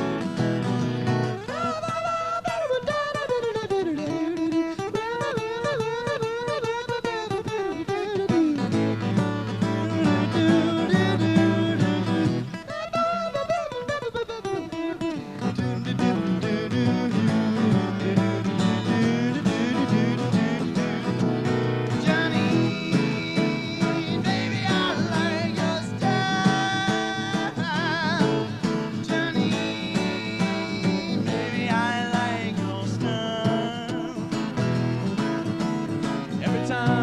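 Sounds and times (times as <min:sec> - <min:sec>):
strummed acoustic guitar rhythm: 0:00.0 - 0:37.0.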